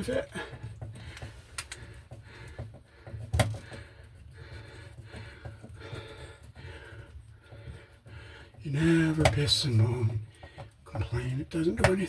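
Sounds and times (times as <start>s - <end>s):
screw scraping and ticking: 0.4s - 5.8s.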